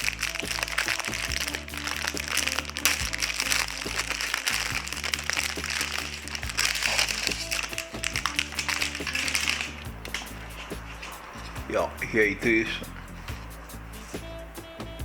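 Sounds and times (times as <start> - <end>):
packaging crinkling: 0.0 - 10.4.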